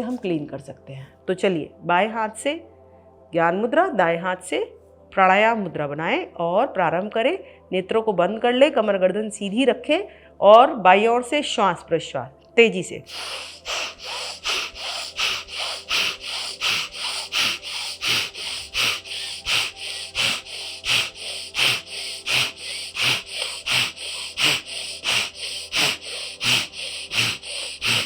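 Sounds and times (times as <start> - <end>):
forceful breathing through nostril: 13.1 - 28.0.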